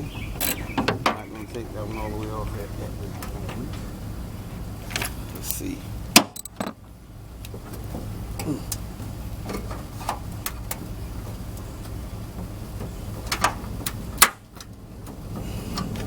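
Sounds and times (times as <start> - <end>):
steady low hum: 0.0 - 16.0
hand tool clicks and metal taps: 6.2 - 6.8.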